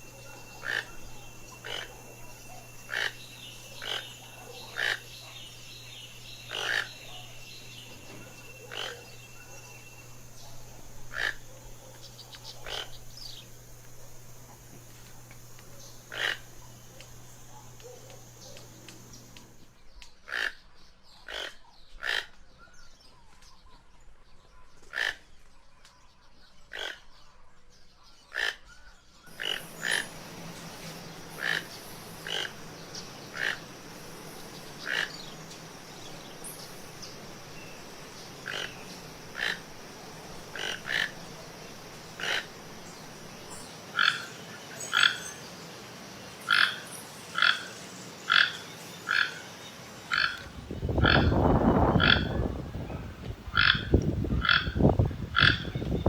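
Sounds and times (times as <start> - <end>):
toucan calling: 0.0 - 19.7, 29.3 - 45.3, 46.5 - 49.4, 50.1 - 56.0
steady background hiss: 0.0 - 19.8, 29.3 - 56.0.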